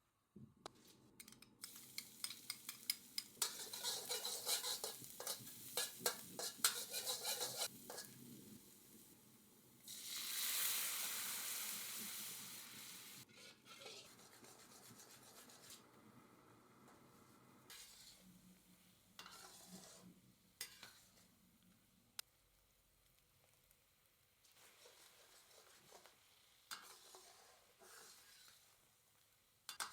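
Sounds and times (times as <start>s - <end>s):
metal spatula clicking on wok: 1.2s - 8.2s
food sizzling in a wok: 1.6s - 15.6s, 16.2s - 29.9s.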